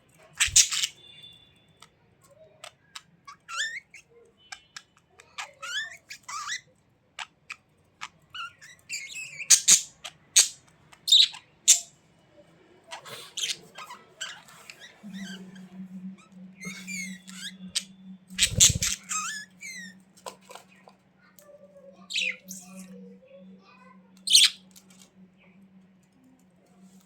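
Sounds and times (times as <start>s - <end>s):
budgerigars chattering and warbling: 0.4s - 1.0s, 16.6s - 19.9s.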